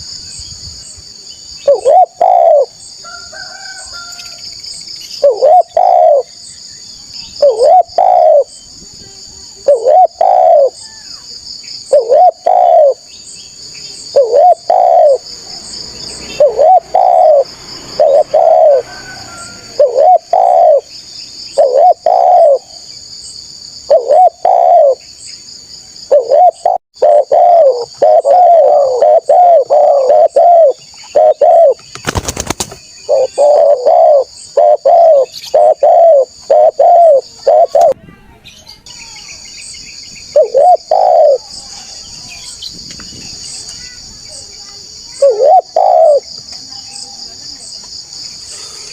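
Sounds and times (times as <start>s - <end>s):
dove cooing: 1.6s - 4.1s, 5.2s - 6.3s, 7.4s - 8.6s, 9.6s - 10.8s, 11.9s - 13.1s, 14.0s - 15.3s, 16.2s - 20.9s, 21.5s - 22.8s, 23.8s - 25.0s, 26.1s - 31.8s, 33.0s - 38.0s, 40.3s - 41.6s, 45.1s - 46.3s.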